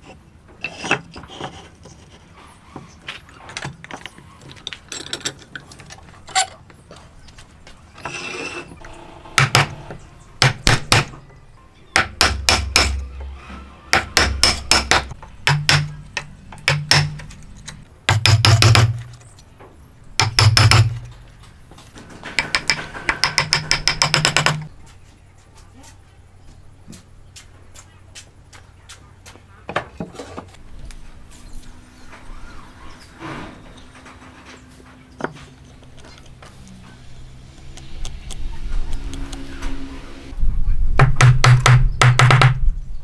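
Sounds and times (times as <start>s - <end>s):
hammer blows: 9.4s - 11.3s, 12.0s - 19.2s.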